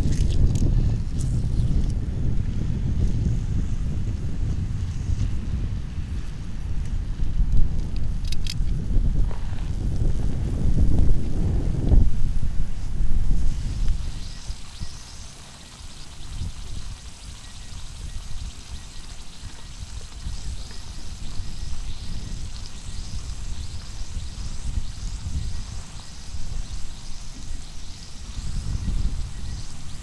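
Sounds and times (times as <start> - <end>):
wind on microphone: 0.0 - 30.0
meat sizzling on a griddle: 13.4 - 30.0.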